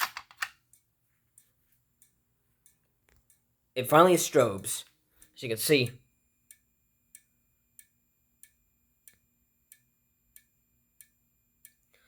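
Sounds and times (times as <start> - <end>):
strobe ticking: 6.4 - 11.9.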